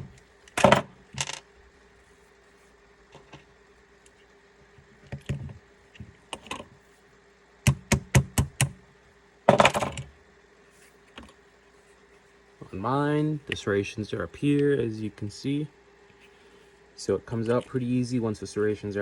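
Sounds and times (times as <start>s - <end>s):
hammer tapping a punch: 7.7s - 8.8s.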